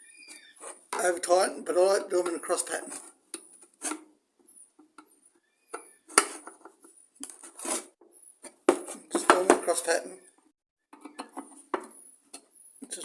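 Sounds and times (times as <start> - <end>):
faint squeaks: 0.0 - 0.9.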